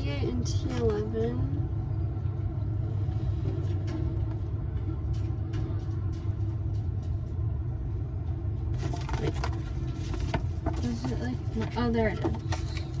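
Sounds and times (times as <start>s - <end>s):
faint clicks and rustles: 8.4s - 13.0s.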